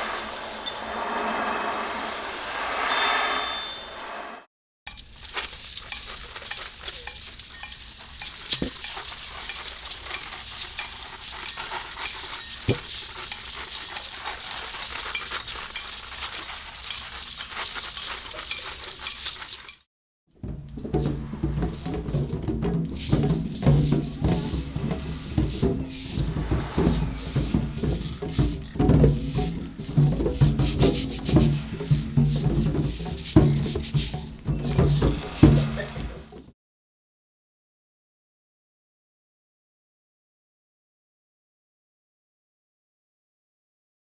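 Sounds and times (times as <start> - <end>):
sharp percussion hits: 0.0 - 4.5, 20.9 - 36.4
scraping and shaking percussion: 0.0 - 36.5
crackle of tiny percussion clicks: 4.9 - 19.9.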